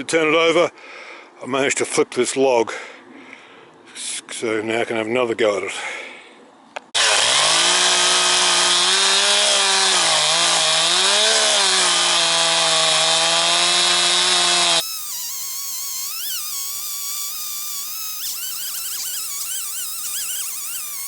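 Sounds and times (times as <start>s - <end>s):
chainsaw cutting log: 7.0s - 21.0s.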